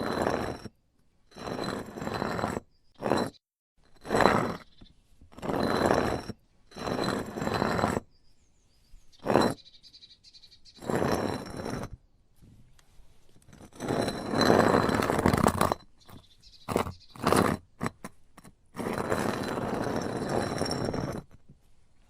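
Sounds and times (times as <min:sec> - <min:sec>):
heavy object scraping on hard surface: 0:00.0 - 0:00.7, 0:01.3 - 0:03.4, 0:05.3 - 0:08.1, 0:10.8 - 0:12.0, 0:13.5 - 0:15.8, 0:18.8 - 0:21.4.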